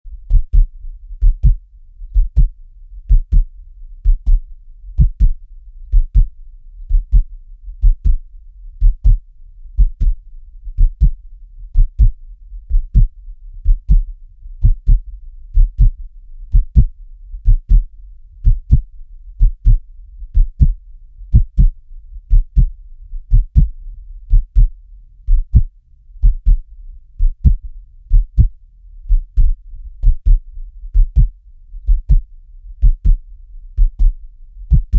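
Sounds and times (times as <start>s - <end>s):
deep heartbeat thumps: 0.1s - 34.9s
faint low hum: 0.1s - 34.9s.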